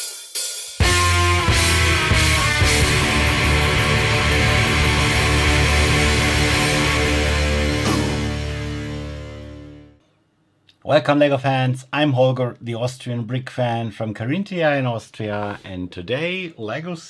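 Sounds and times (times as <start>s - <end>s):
rock music: 0.8s - 10.0s
cymbal hits: 2.3s - 9.9s.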